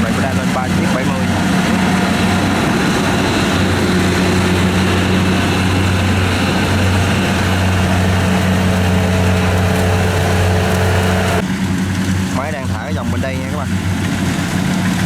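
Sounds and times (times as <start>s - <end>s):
diesel engine humming: 0.0s - 11.5s.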